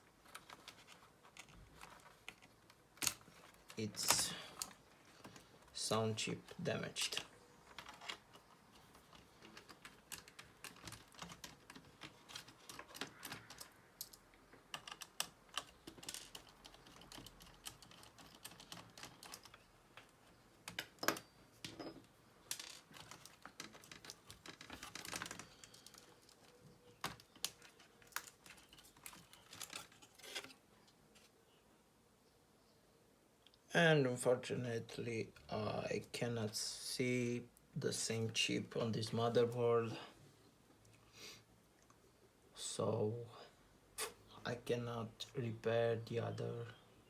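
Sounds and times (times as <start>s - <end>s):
laptop parts clicking and rattling: 0.0s - 31.3s.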